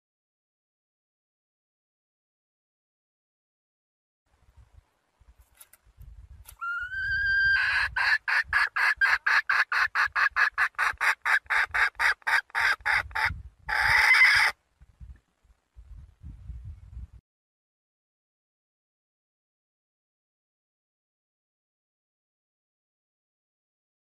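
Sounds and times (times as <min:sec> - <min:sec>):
hen calling and clucking: 0:06.4 - 0:14.6.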